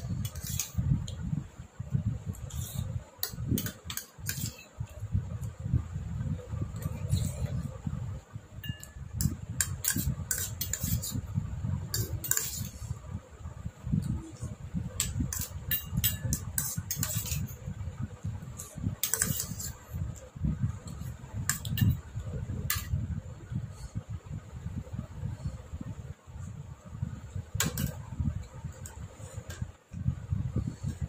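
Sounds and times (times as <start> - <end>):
dishes clinking: 8.6 - 11.0.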